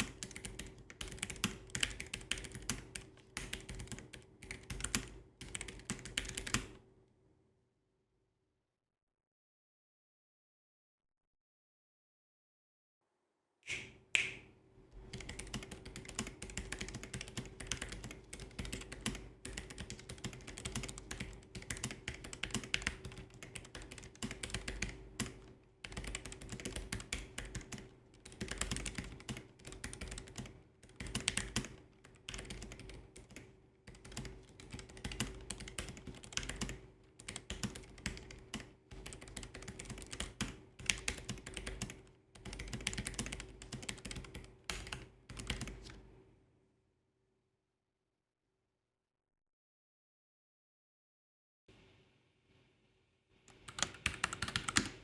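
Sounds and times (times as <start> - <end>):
mechanical keyboard typing: 0.0 - 6.8, 15.1 - 46.0, 53.5 - 55.0.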